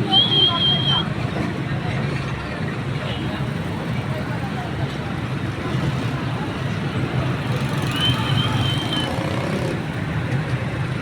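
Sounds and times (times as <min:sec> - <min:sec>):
low rumble of road traffic: 0:00.0 - 0:11.0
thin high whistle: 0:00.1 - 0:01.1.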